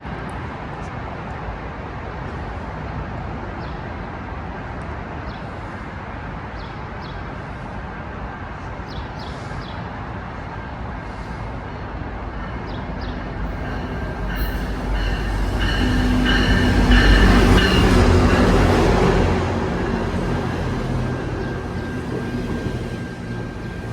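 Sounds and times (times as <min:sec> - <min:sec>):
diesel train rumbling: 0:00.1 - 0:23.9
steady ringing tones: 0:13.5 - 0:19.0.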